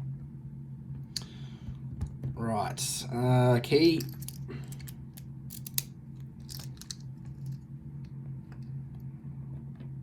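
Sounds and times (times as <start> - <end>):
steady low hum: 0.0 - 10.0
lock and key clicking: 4.0 - 5.9, 6.5 - 7.6.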